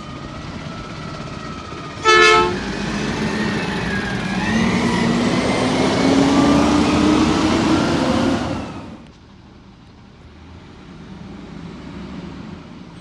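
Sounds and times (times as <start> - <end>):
truck engine running: 0.0 - 13.0
truck horn honk: 2.0 - 3.0.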